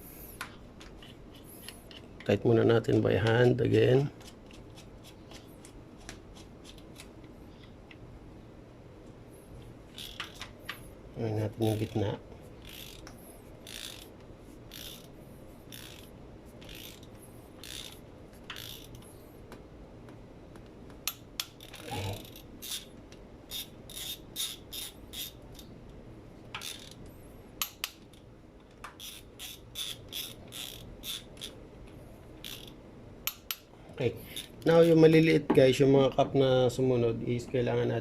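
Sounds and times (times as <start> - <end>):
ratchet wrench clicking: 9.9 - 10.5, 12.6 - 14.1, 14.7 - 15.1, 15.7 - 19.0, 21.1 - 22.9, 23.5 - 25.6, 26.6 - 27.0, 27.6 - 28.0, 29.0 - 31.6, 32.4 - 33.7.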